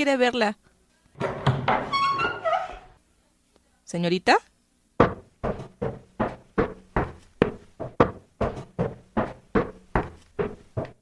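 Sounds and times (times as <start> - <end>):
footsteps on wooden stairs: 5.0 - 11.0.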